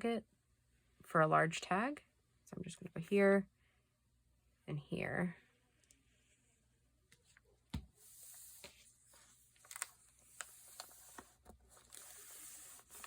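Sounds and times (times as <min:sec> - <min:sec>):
paper rustling: 0:08.0 - 0:13.0.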